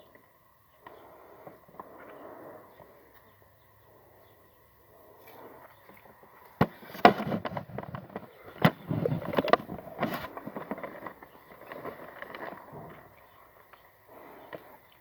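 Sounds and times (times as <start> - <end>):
rustling and crackling: 5.1 - 15.0.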